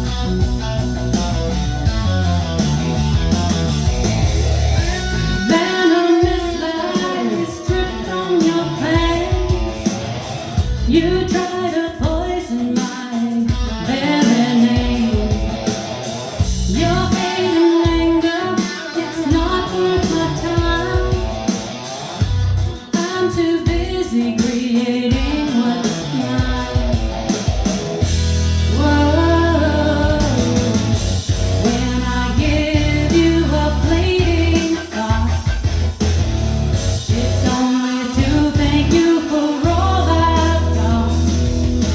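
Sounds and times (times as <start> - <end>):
guitar accompaniment: 0.0 - 41.9
woman singing: 5.0 - 10.0, 10.8 - 15.6, 16.6 - 21.5, 22.9 - 27.3, 28.7 - 31.0, 31.6 - 35.6, 37.1 - 41.4.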